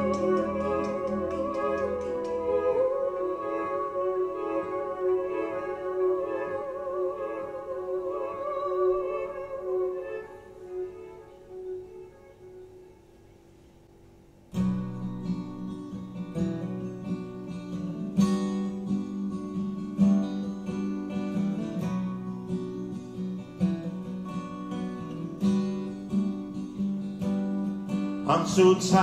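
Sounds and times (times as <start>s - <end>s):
acoustic guitar strumming: 0.0s - 10.2s, 14.5s - 29.0s.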